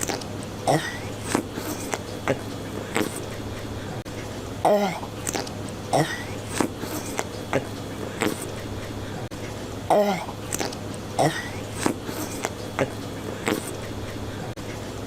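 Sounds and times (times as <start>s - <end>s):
steady low hum: 0.0s - 15.0s
cartoon character hacking coughs: 6.0s - 7.7s, 11.2s - 11.6s.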